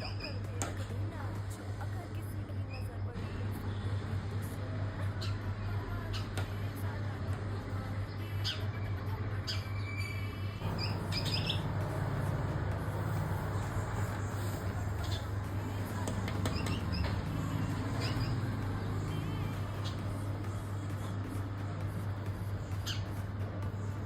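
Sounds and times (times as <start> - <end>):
steady low hum: 0.0 - 24.0
birds chirping: 2.5 - 24.0.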